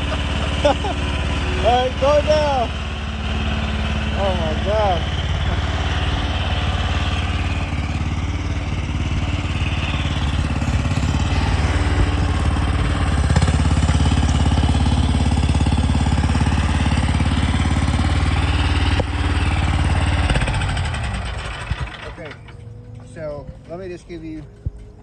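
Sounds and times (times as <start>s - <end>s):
skid steer engine running: 0.0s - 25.0s.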